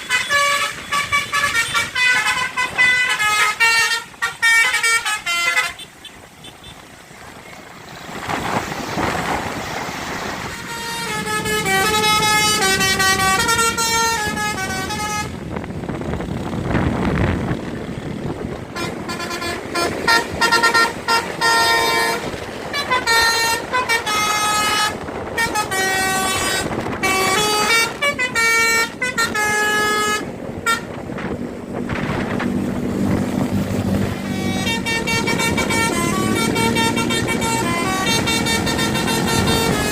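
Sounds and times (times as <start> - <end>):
bus multi-tone air horn melody: 0.0 - 6.8, 10.4 - 15.5, 18.7 - 31.5, 34.0 - 39.9
traffic noise: 0.0 - 39.9
passing vehicle rushing: 6.2 - 39.9.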